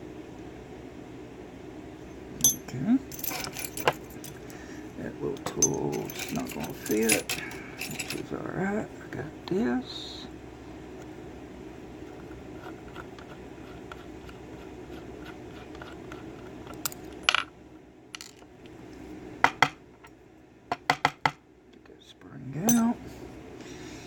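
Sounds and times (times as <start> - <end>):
small metal parts clinking: 2.4 - 4.6, 5.4 - 8.3, 16.7 - 17.5, 18.2 - 18.5.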